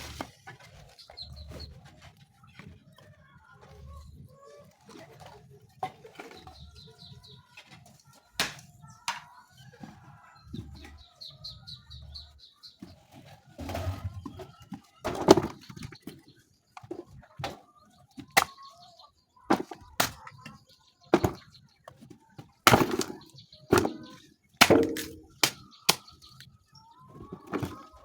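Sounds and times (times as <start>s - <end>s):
chickens clucking faintly: 0.0s - 28.0s
sharp knocks and cracks: 8.3s - 9.3s, 18.2s - 18.6s, 22.7s - 26.4s.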